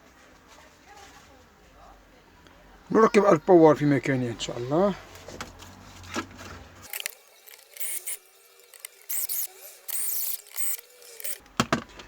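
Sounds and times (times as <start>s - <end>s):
scraping rustling handling noises: 0.0s - 1.8s.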